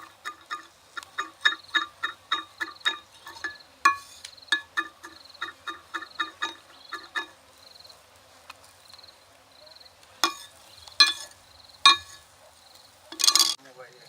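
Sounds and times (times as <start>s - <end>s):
insect chirping: 0.0s - 8.0s, 8.6s - 13.6s
metallic clinks of kitchen utensil: 10.2s - 12.3s, 13.1s - 13.6s.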